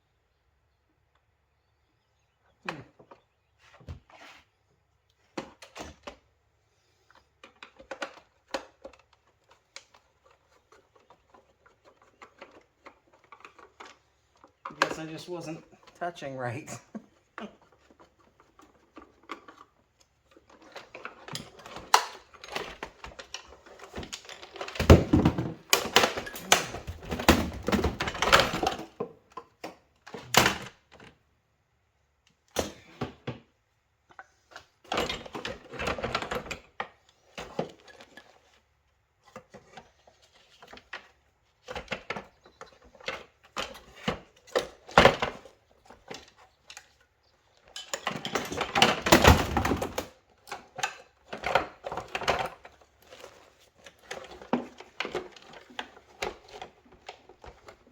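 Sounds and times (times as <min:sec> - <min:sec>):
plastic parts clicking and rattling: 0:07.1 - 0:16.0, 0:17.0 - 0:31.2, 0:34.2 - 0:57.9.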